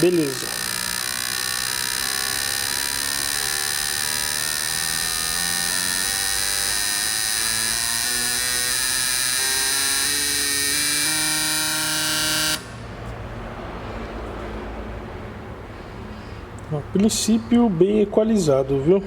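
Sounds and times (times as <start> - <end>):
injector test bench buzzing: 0.0 - 12.9.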